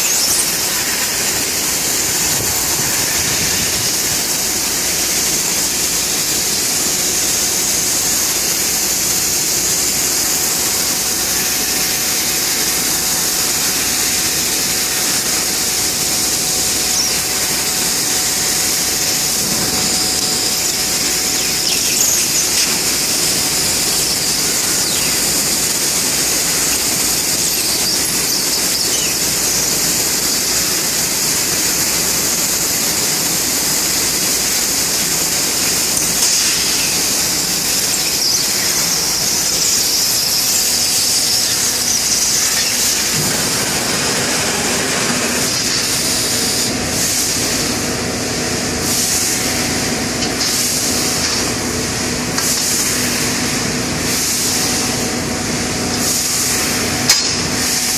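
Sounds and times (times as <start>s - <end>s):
laser cutter high-pitched hiss: 0.0s - 57.9s.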